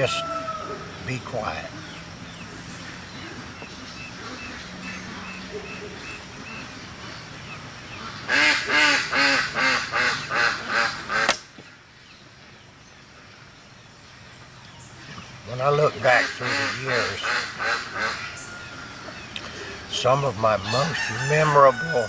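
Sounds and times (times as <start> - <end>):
duck quacking: 8.3 - 11.3, 16.0 - 18.3.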